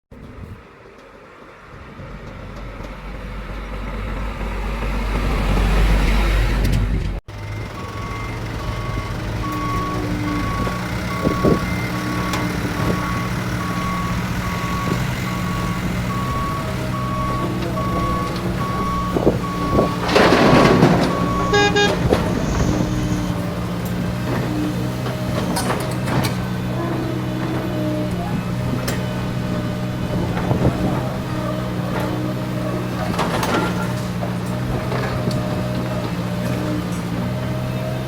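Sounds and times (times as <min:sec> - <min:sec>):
diesel engine running: 0:00.2 - 0:38.0
reversing alarm beeping: 0:07.4 - 0:23.5.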